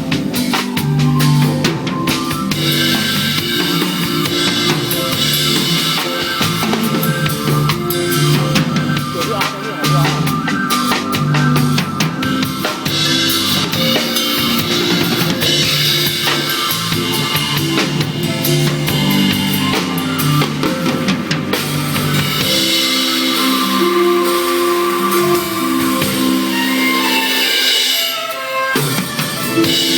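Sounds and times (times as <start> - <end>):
backing music track: 0.0 - 29.9
drum kit playing: 0.0 - 29.9.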